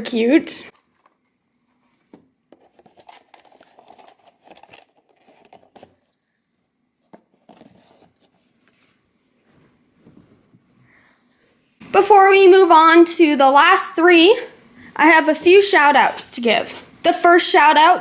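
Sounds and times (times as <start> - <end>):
packaging clicks and rustles: 0.8 - 6.4, 7.0 - 9.0.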